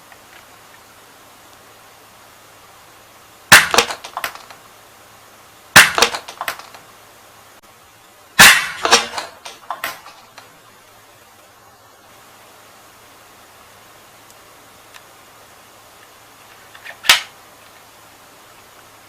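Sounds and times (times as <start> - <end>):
toy pistol shots: 3.5 - 4.5, 5.8 - 6.7, 8.4 - 10.1, 17.0 - 17.3.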